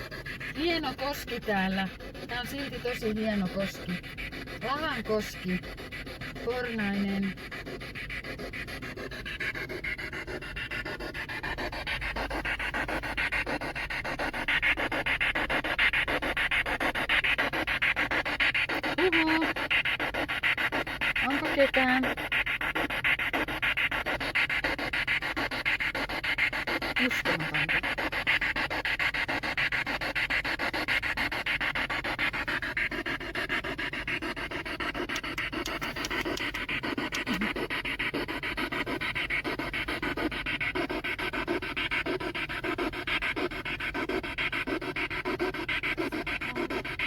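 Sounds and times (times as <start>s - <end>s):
chopped radio static pulsing: 0.0s - 5.6s, 18.7s - 19.7s
fast even pulsing: 0.0s - 47.0s.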